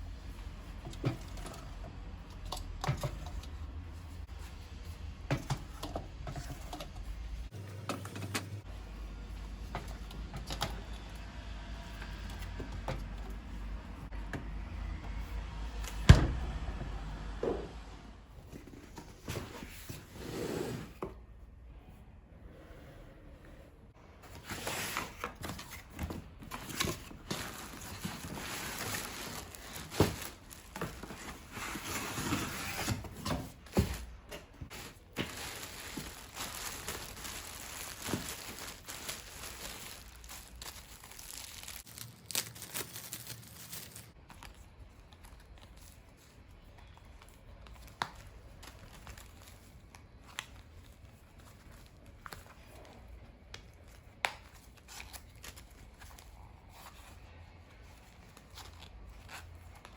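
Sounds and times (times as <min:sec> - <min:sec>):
packaging crinkling and tearing: 0:26.6 - 0:31.2, 0:34.7 - 0:44.5.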